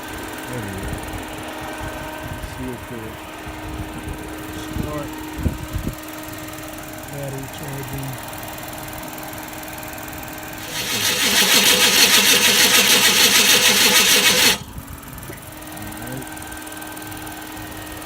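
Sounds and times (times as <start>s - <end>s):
car starter cranking engine: 10.6s - 14.8s.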